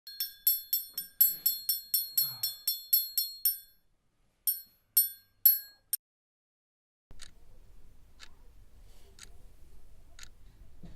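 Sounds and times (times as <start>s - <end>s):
bell-like metallic strikes: 0.1s - 3.8s, 4.5s - 5.9s.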